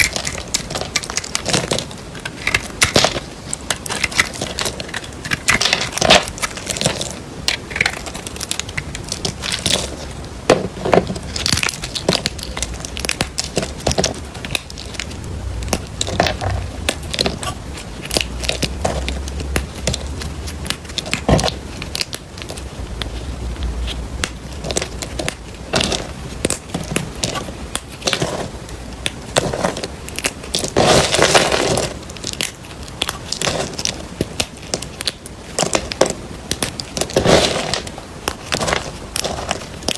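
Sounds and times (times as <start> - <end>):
knife crunching through soap: 0.0 - 39.9.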